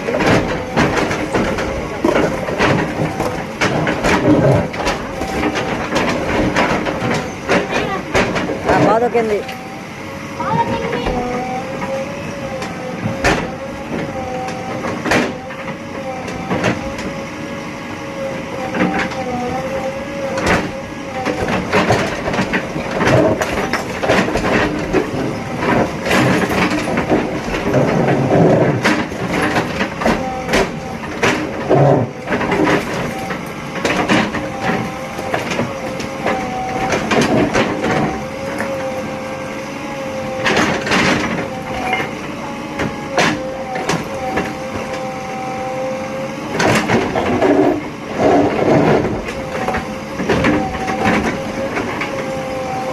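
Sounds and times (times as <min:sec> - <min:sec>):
sharp knocks and clanks: 0:00.0 - 0:09.6, 0:12.6 - 0:15.8, 0:18.6 - 0:38.9
backhoe engine and hydraulics whine: 0:00.0 - 0:52.9.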